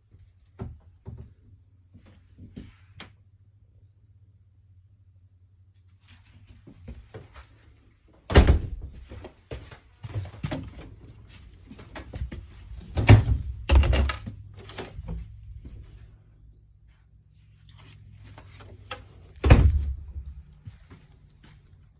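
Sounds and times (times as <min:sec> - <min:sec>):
toy doors knocking and rattling: 0:13.0 - 0:14.4.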